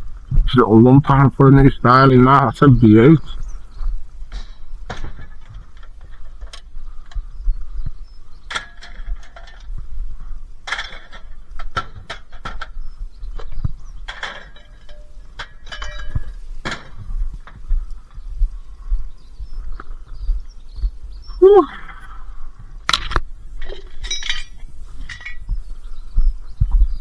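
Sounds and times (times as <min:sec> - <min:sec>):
scrap metal clanking and rattling: 0:04.3 - 0:06.7, 0:08.5 - 0:09.8, 0:10.6 - 0:12.8, 0:13.4 - 0:17.6, 0:22.9 - 0:25.5.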